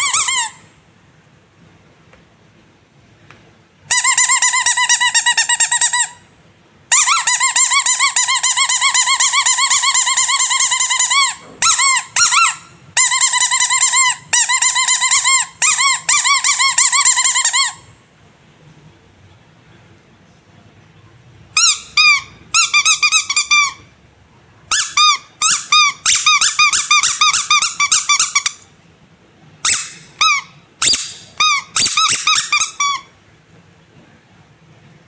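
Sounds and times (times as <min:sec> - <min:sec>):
squeaky rubber toy squeezed: 0:00.0 - 0:00.7, 0:03.9 - 0:06.2, 0:06.9 - 0:17.9, 0:21.5 - 0:23.9, 0:24.7 - 0:28.7, 0:29.6 - 0:33.2.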